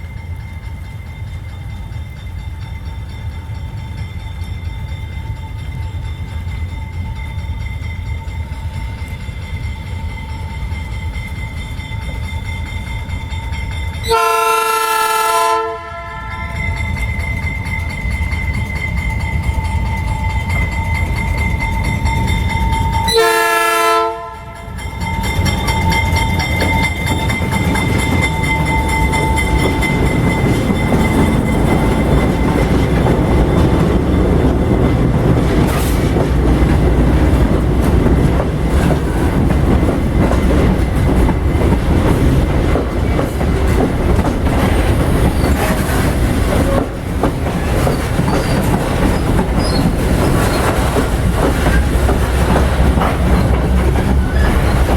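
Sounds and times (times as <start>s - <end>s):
freight train rumbling past: 0.0s - 54.9s
wheels clattering over rail joints: 24.7s - 54.9s.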